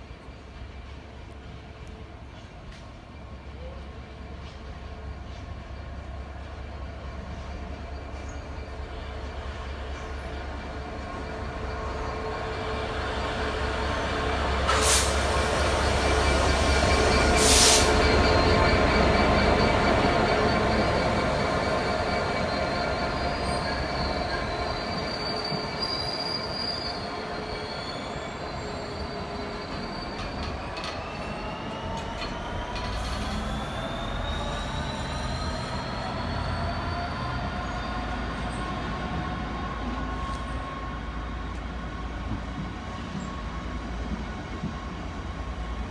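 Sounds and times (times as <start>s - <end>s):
low train rumble: 0.0s - 45.9s
train wheels squealing: 3.0s - 45.9s.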